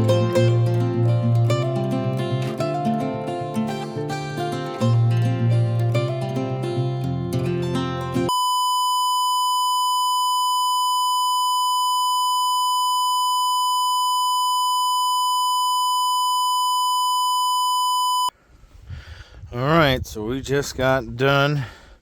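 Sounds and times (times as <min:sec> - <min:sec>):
guitar music: 0:00.0 - 0:08.3
high electronic beep tone: 0:08.3 - 0:18.3.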